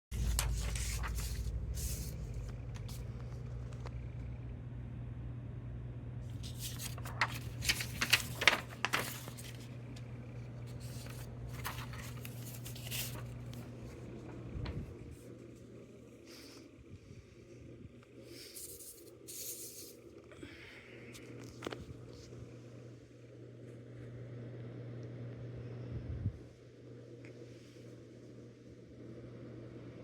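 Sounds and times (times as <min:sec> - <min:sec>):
steady low hum: 0:00.1 - 0:30.0
rustling handling noise: 0:00.2 - 0:04.0, 0:06.3 - 0:15.6.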